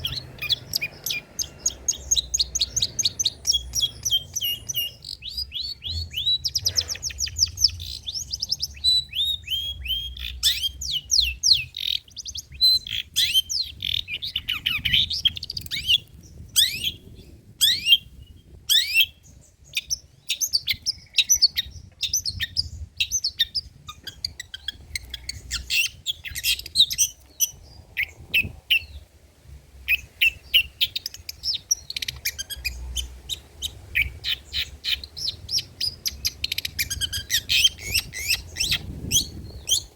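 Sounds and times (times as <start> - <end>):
shrike singing: 0.0 - 16.0.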